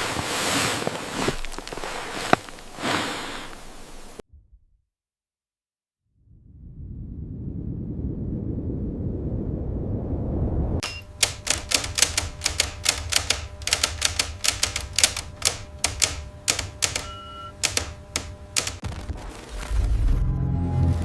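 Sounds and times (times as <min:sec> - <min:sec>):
low steady rumble: 0:06.2 - 0:10.8
rapid sharp clicks: 0:10.8 - 0:19.0.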